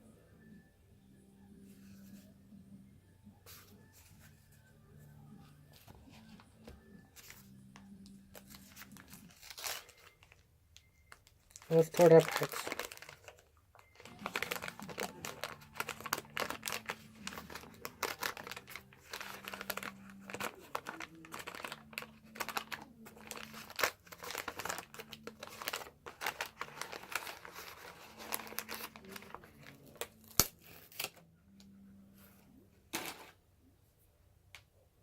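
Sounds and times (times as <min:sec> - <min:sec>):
wax paper wrappers crinkling: 0:07.2 - 0:31.2.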